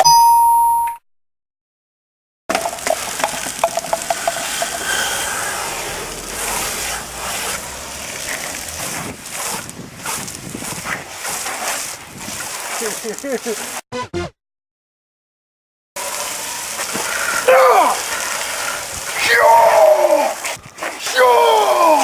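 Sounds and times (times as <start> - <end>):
sputtering clicks: 2.5 - 9.8
liquid spraying onto car: 2.5 - 13.8, 16.0 - 19.4.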